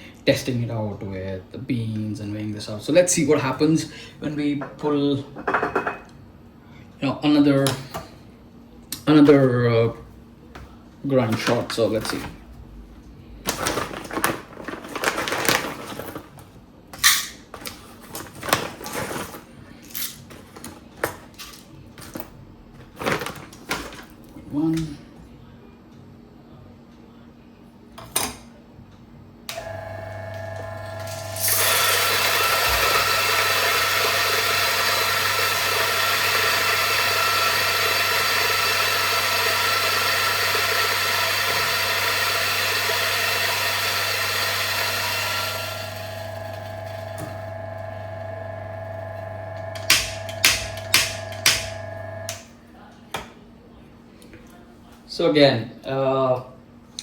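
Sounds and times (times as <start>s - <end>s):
espresso grinder grinding beans: 29.5s - 52.5s.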